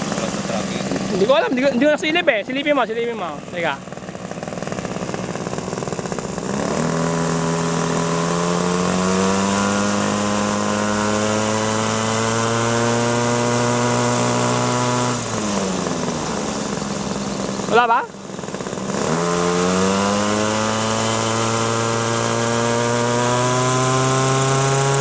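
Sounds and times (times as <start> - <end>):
model helicopter engine revving: 0.0 - 25.0.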